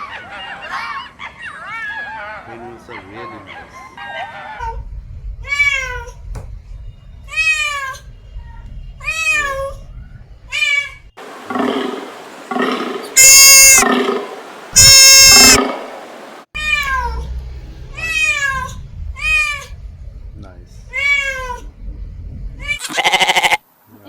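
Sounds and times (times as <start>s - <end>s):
cat meowing: 5.4s - 6.3s, 7.3s - 8.1s, 9.0s - 9.9s, 10.5s - 11.1s, 13.2s - 13.8s, 14.8s - 15.7s, 16.6s - 19.8s, 20.9s - 21.7s, 22.6s - 23.6s
loud shrill held calls: 11.2s - 16.4s.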